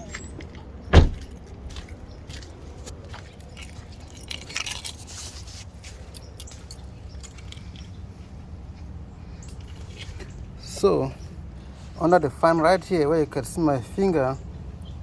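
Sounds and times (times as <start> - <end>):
handling clicks and scraping: 0.0 - 8.0
car engine idling: 0.9 - 1.4.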